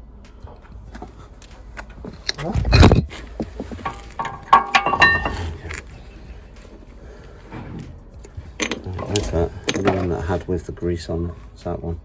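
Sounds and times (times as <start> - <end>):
metal parts clicking and clinking: 2.1 - 6.0, 8.2 - 10.6.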